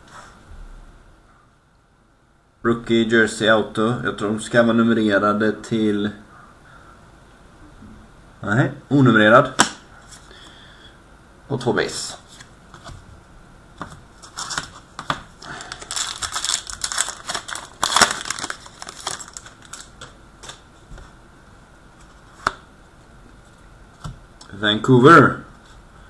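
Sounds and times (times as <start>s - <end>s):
cards being handled: 13.8s - 21.2s
card wrapper crinkling and tearing: 14.2s - 20.6s.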